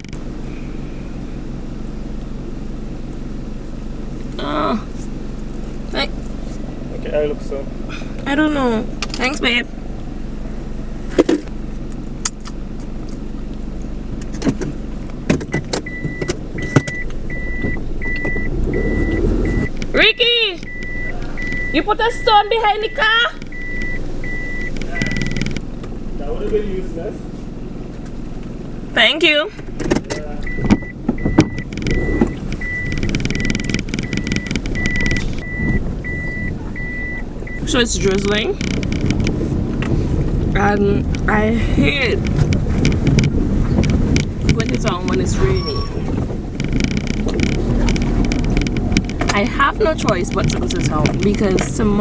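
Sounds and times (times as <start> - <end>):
car engine idling: 0.0 - 52.0
sharp clicks and knocks: 14.1 - 18.5, 19.6 - 21.7, 23.4 - 26.0, 29.6 - 41.3, 42.1 - 45.3, 46.0 - 52.0
electronic beep: 15.5 - 19.7, 20.6 - 25.6, 30.4 - 37.6.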